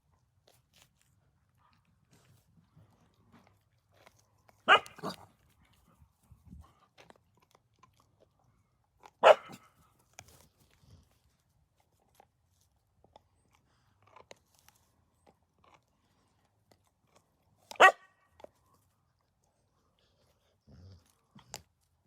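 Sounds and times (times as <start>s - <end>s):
dogs chewing on a bone: 0.0s - 22.0s
dog barking: 4.7s - 5.2s, 9.2s - 9.7s, 17.8s - 18.1s.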